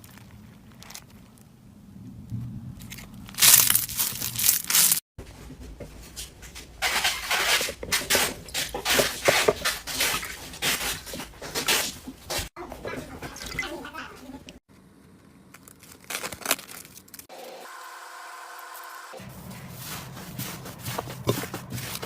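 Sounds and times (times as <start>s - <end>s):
slime squeezed crackling: 2.8s - 5.0s.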